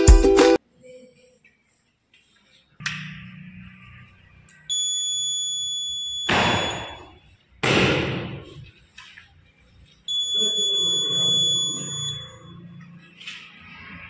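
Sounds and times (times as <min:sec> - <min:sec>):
high-pitched smoke alarm beep: 0:04.7 - 0:07.3, 0:10.1 - 0:12.8.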